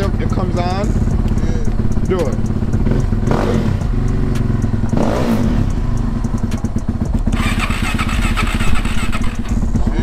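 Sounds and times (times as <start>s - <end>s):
small engine idling: 6.1s - 10.0s.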